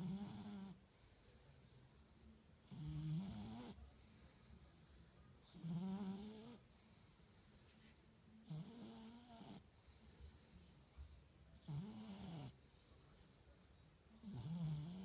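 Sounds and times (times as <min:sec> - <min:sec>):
cat snoring: 0:00.0 - 0:00.8, 0:02.7 - 0:04.2, 0:05.5 - 0:06.6, 0:08.4 - 0:09.6, 0:11.6 - 0:12.6, 0:14.2 - 0:15.0.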